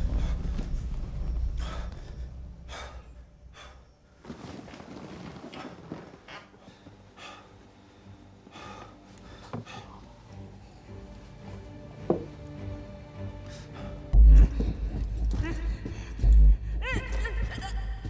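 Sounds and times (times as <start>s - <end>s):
person breathing and sighing: 0.0s - 4.0s
faint low drone: 0.0s - 4.2s, 9.7s - 16.9s.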